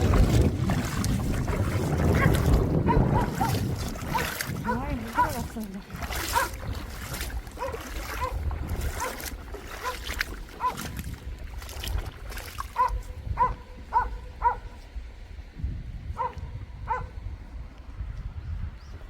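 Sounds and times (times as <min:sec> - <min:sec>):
wind rumble on microphone: 0:00.0 - 0:19.0
dog yipping: 0:07.6 - 0:08.4, 0:12.8 - 0:14.6.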